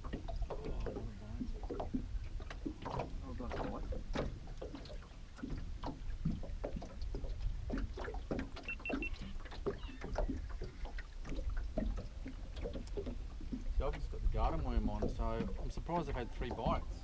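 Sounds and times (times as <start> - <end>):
water lapping against boat hull: 0.0 - 17.0
short high beeps: 8.7 - 9.2.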